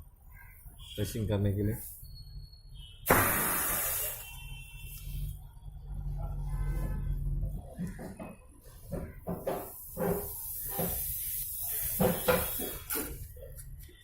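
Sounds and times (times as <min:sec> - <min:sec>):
high hiss: 0:03.1 - 0:04.3.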